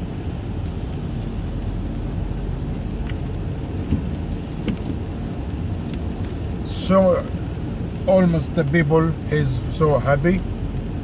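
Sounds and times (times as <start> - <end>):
low continuous rumble: 0.0 - 11.0
rain falling: 0.0 - 11.0
light taps: 3.8 - 6.4.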